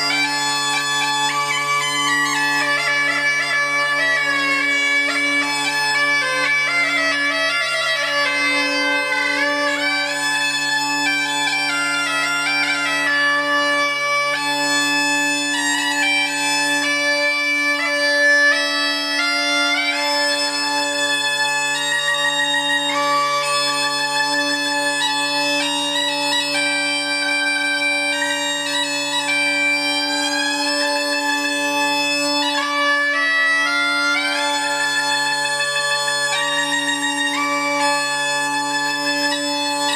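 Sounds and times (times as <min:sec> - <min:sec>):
bagpipe chanter melody: 0:00.0 - 0:39.9
bagpipe drones: 0:00.0 - 0:39.9.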